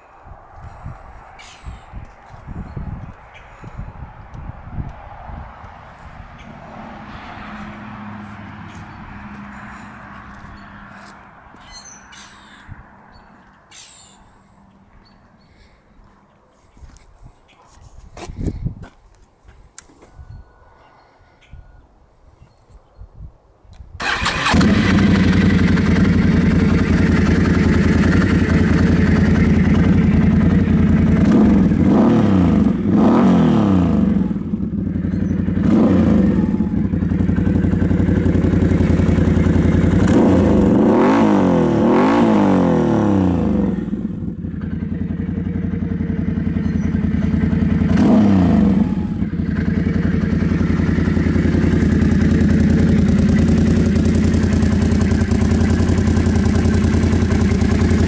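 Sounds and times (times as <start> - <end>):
atv engine idling loudly: 24.0 - 32.8, 34.0 - 41.7, 42.6 - 58.0
atv engine revving: 24.0 - 58.0.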